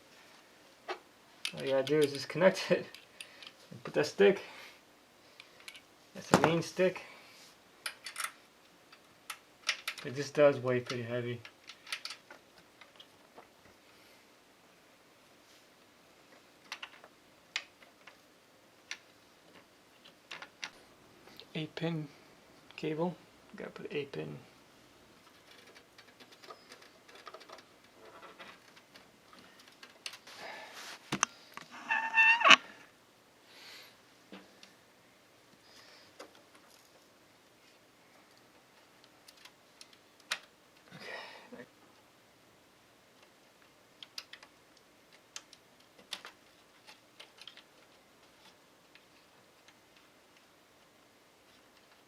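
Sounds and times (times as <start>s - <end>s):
cables and parts rustling: 0.1s - 4.3s, 25.1s - 32.8s, 35.5s - 42.1s, 43.1s - 52.0s.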